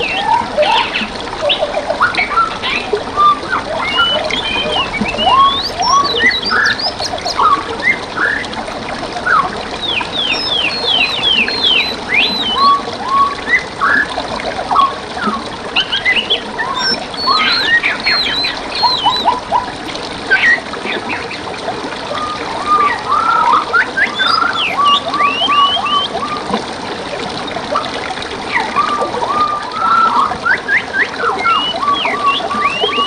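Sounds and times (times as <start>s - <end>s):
songbirds singing and chirping: 0.0s - 8.6s, 9.4s - 14.0s, 15.8s - 21.4s, 22.0s - 26.4s, 31.2s - 33.0s
running water trickling: 0.0s - 33.0s.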